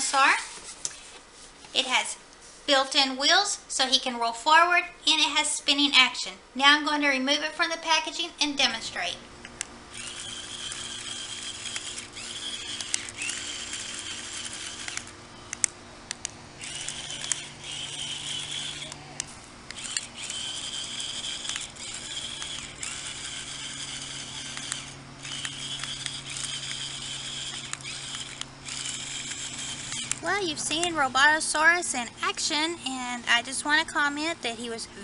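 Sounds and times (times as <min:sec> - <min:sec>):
sharp clicks: 0:09.4 - 0:31.0
toy motor and gears whirring: 0:09.9 - 0:15.7, 0:16.6 - 0:32.7.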